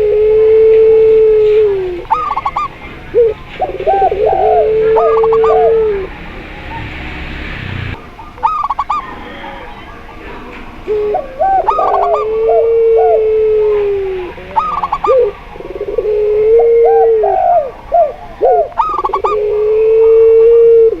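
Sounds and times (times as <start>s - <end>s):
short high dove coos: 0.0s - 6.1s
long dove coos: 0.0s - 6.2s, 8.0s - 21.0s.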